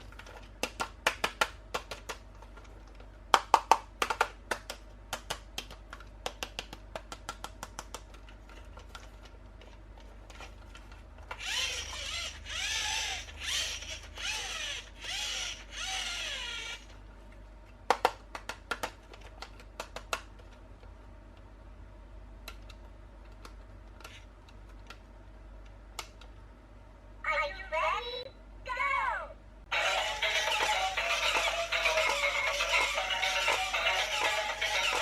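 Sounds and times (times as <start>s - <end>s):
plastic clicks and taps: 0.3s - 9.3s, 17.9s - 20.6s
toy electronic sound effects: 11.4s - 16.9s, 29.7s - 35.0s.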